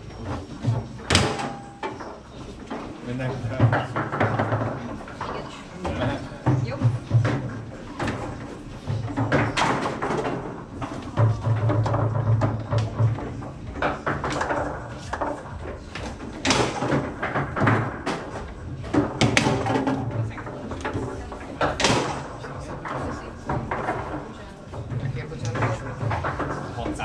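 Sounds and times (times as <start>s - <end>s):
foosball knocks and clacks: 0.0s - 27.0s
foosball rods banging: 0.0s - 27.0s
murmur of voices: 2.2s - 16.9s.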